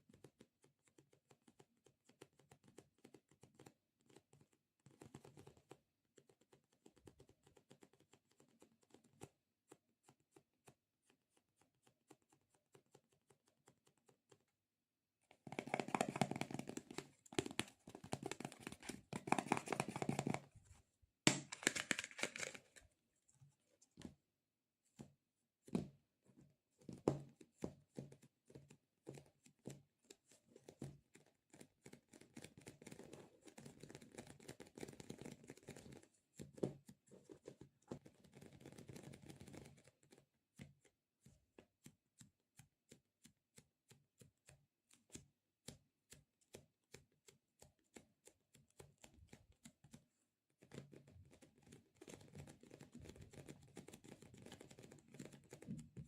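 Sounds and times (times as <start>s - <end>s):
sticky taps and clicks: 15.3s - 20.5s.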